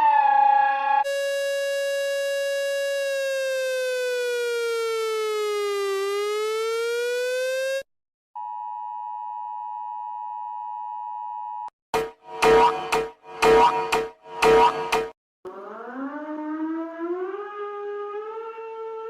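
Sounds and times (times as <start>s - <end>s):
buzzy gliding alert tone: 12.0s - 15.1s
loud alert sound: 12.0s - 15.1s
two-tone attention signal: 12.0s - 15.1s.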